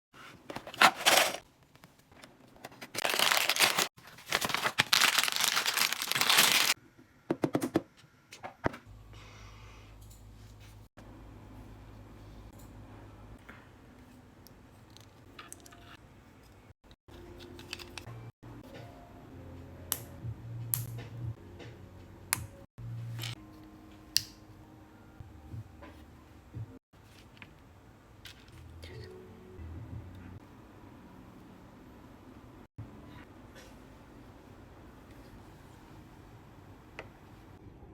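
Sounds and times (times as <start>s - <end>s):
packaging crinkling and tearing: 2.8s - 6.8s.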